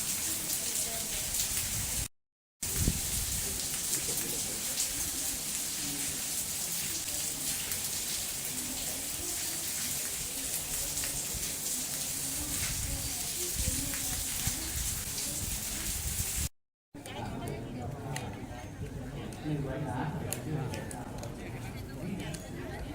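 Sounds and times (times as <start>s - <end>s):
heavy rain hissing: 0.0s - 16.5s.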